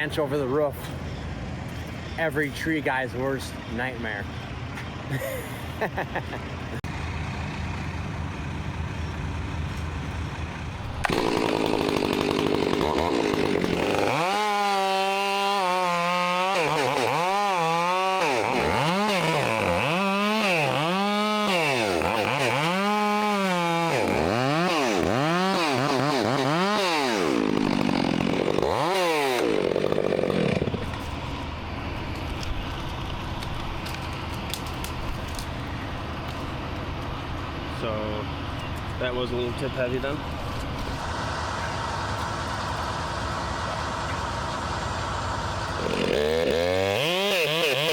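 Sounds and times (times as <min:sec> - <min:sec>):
truck engine running: 0:03.3 - 0:13.8, 0:30.6 - 0:46.4
chainsaw cutting branch: 0:10.9 - 0:31.2, 0:40.6 - 0:47.9.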